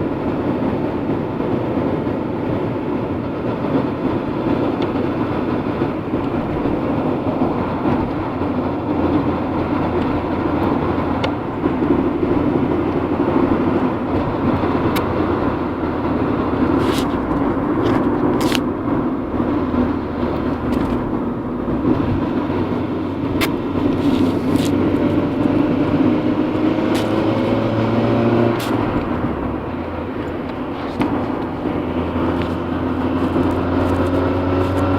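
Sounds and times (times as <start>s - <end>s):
car road and drivetrain noise: 0.0s - 34.9s.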